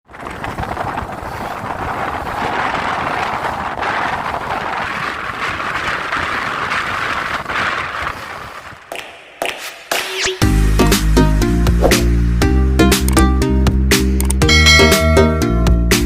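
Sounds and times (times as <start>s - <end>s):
strong wind: 0.0s - 9.0s
wind buffeting microphone: 0.0s - 9.1s
choppy water: 0.1s - 8.8s
music: 9.6s - 16.0s.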